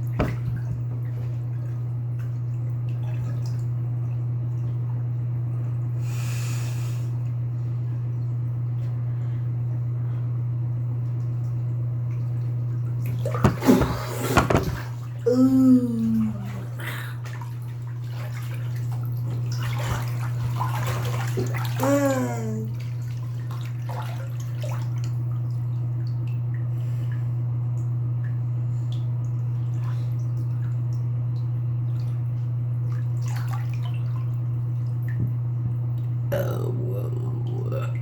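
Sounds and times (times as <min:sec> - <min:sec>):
steady low hum: 0:00.0 - 0:38.0
short falling voice: 0:15.3 - 0:16.6, 0:36.3 - 0:38.0.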